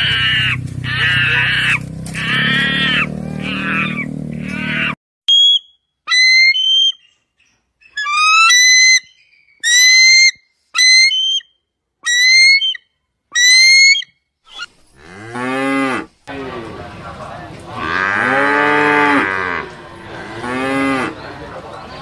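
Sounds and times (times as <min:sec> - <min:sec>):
lower animal call: 0:00.0 - 0:05.0
high whistled calls: 0:05.3 - 0:14.7.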